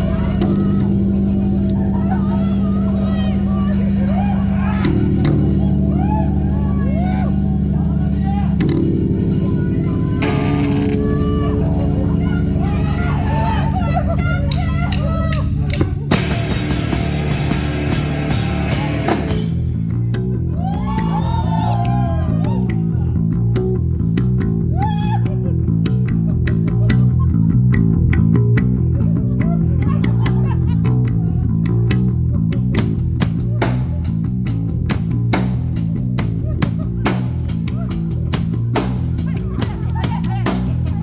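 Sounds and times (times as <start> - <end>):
cymbal hits: 0.0 - 19.7
drum kit: 0.0 - 25.0, 27.8 - 41.0
bending electric guitar notes: 0.0 - 39.7
heavy bass line: 0.0 - 41.0.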